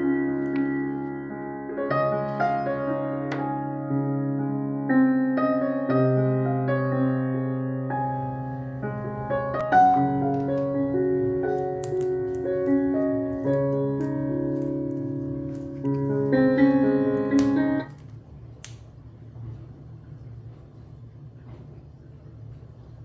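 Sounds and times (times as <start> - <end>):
piano music: 0.0 - 18.0.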